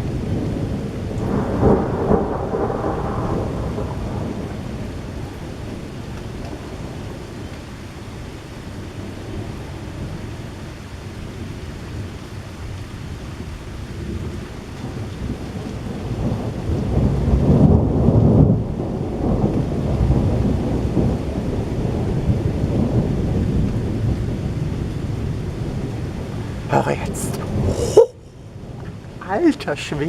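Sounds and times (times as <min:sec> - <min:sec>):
thunder rolling: 0:00.0 - 0:07.5, 0:13.9 - 0:29.8
steady rain: 0:00.0 - 0:30.0.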